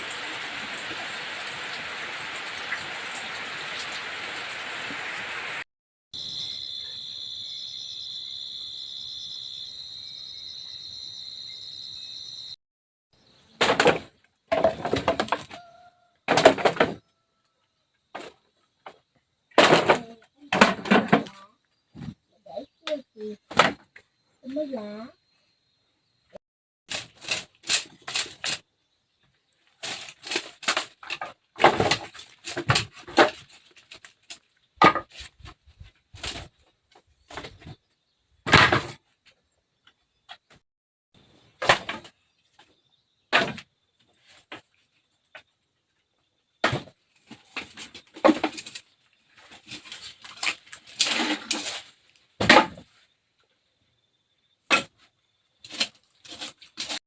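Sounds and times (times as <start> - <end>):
knocks and clatters of objects: 13.6 - 15.7, 16.3 - 17.1, 18.1 - 22.2, 29.8 - 37.8, 38.5 - 40.6, 41.6 - 45.6, 46.6 - 53.0.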